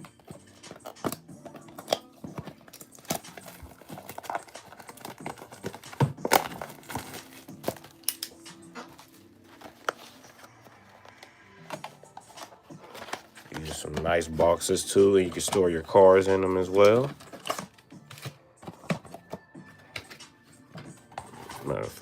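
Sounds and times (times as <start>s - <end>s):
cardboard tearing: 1.8s - 7.9s
packaging crinkling: 1.8s - 14.1s.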